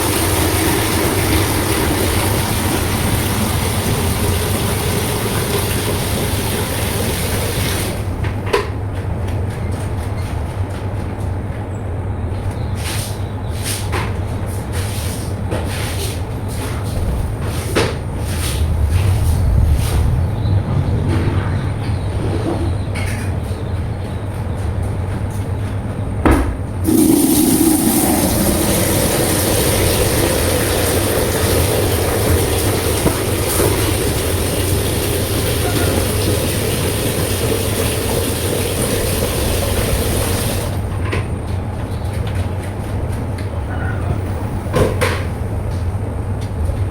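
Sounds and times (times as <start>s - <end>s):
wet vacuum cleaner droning: 0.0s - 8.2s, 26.8s - 40.8s
rush of air: 17.2s - 23.0s.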